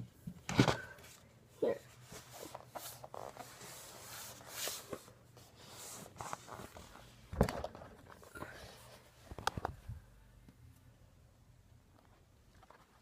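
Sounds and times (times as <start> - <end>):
photo album rustling: 1.9 - 8.3.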